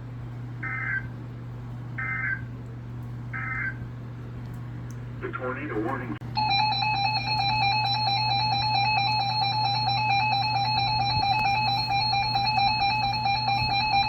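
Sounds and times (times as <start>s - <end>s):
low hum: 0.0s - 14.0s
two-tone alarm: 6.3s - 14.0s.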